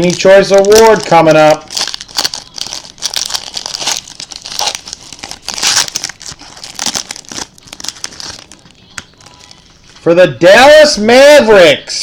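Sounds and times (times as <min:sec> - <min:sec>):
plastic wrapping crinkling: 0:00.0 - 0:10.1.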